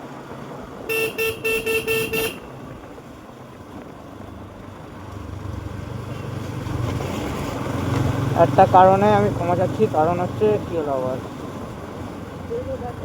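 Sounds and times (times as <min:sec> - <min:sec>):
road rumble: 0:00.0 - 0:13.0
low motorcycle engine: 0:00.2 - 0:13.0
vehicle horn beeping: 0:00.9 - 0:02.7.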